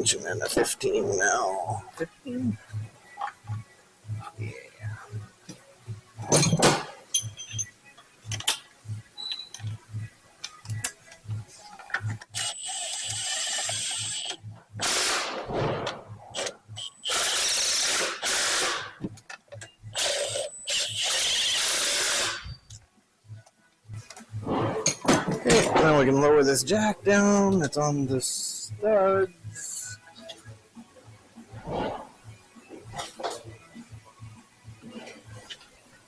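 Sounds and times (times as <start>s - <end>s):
tools clicking and clinking: 6.2s - 7.7s, 8.3s - 8.6s
power ratchet running: 12.3s - 15.4s, 16.4s - 19.0s, 20.0s - 22.4s.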